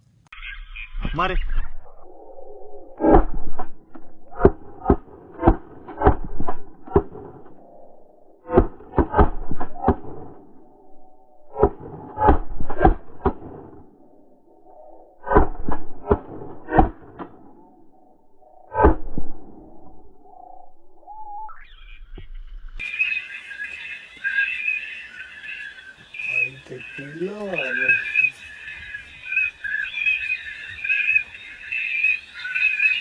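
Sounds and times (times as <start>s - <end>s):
duck quacking: 24.2s - 33.0s.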